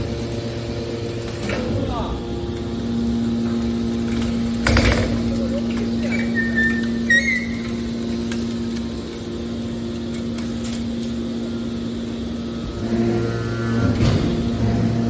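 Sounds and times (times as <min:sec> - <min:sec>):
deeper machine hum: 0:00.0 - 0:15.0
hydraulic baler motor humming: 0:00.0 - 0:15.0.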